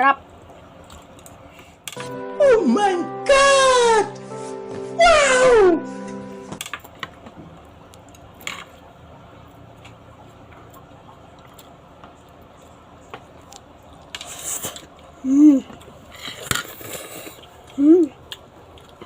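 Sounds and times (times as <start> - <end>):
person humming: 2.1 - 6.2
slurping and chewing: 10.6 - 19.0.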